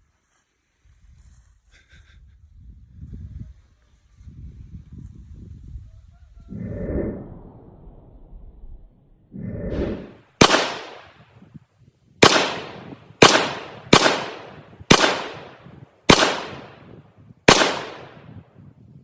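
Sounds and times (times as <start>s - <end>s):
rifle shots with echo: 10.4s - 11.2s, 12.2s - 18.4s.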